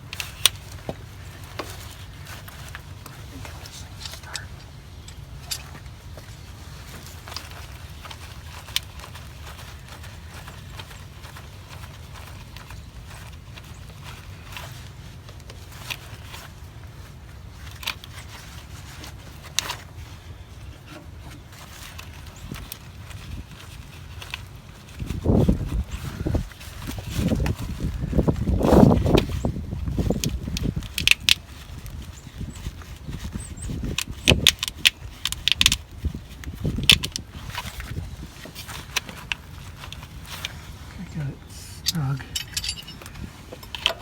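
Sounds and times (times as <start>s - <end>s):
wrench clinking on metal fitting: 41.8s - 44.0s.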